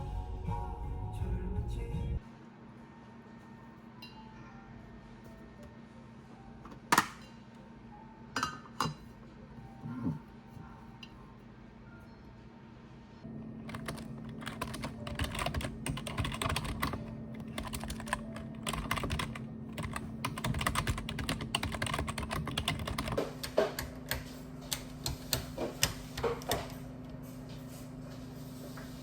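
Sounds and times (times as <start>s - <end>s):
keyboard typing clicks: 13.7s - 26.6s.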